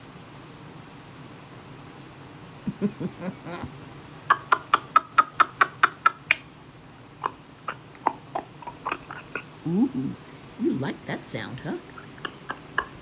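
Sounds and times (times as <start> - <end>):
person making mouth noises: 2.7 - 6.4, 7.2 - 10.2, 11.8 - 13.0
mouth clicking noises: 2.7 - 6.5, 7.2 - 10.3, 11.8 - 13.0.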